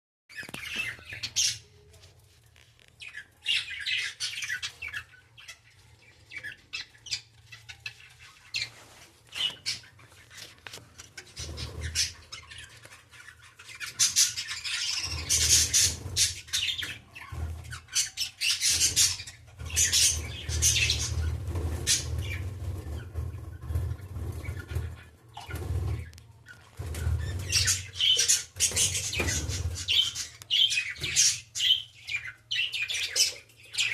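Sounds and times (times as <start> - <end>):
budgerigars chirping: 3.0 - 33.9.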